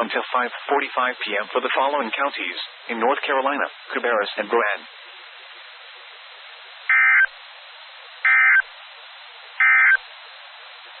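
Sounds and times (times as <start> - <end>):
radio hiss: 0.0 - 11.0
buzzy digital chirps: 6.9 - 7.3, 8.2 - 8.7, 9.6 - 10.0.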